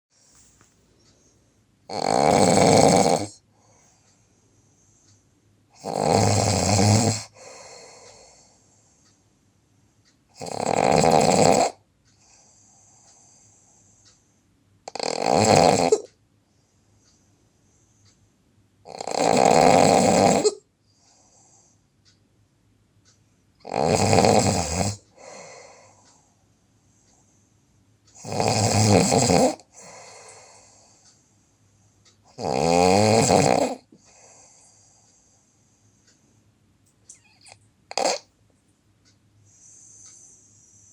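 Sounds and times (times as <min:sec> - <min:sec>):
person snoring loudly: 0:01.9 - 0:03.4, 0:05.8 - 0:08.1, 0:10.4 - 0:11.8, 0:14.9 - 0:16.1, 0:18.9 - 0:20.6, 0:23.6 - 0:25.6, 0:28.2 - 0:30.8, 0:32.3 - 0:33.9, 0:37.9 - 0:38.2
faint breath: 0:03.5 - 0:05.4, 0:07.3 - 0:10.0, 0:12.1 - 0:14.4, 0:25.1 - 0:27.8, 0:29.8 - 0:32.1, 0:33.9 - 0:36.5, 0:39.4 - 0:40.9.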